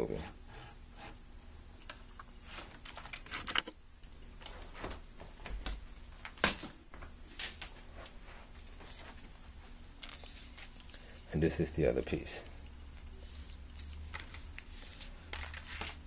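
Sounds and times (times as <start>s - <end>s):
cable clicks and rustles: 1.8s - 8.2s, 10.0s - 11.3s, 12.4s - 16.0s.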